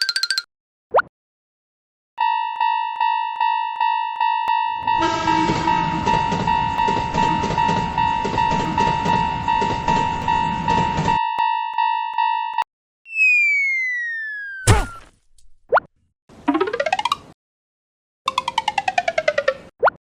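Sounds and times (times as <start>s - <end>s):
railroad crossing bell ringing: 2.2s - 12.6s
train passing with rumbling clatter: 4.8s - 11.2s.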